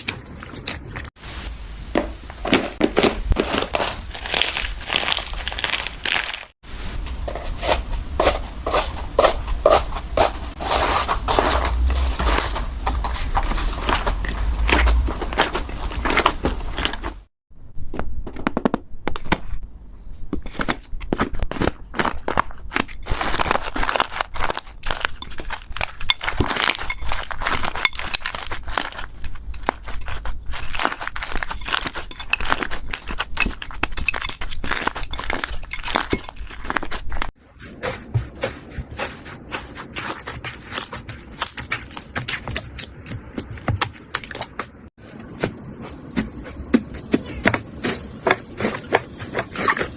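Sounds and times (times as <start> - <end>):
slime crackling and popping: 3.0 - 6.6, 21.2 - 37.3.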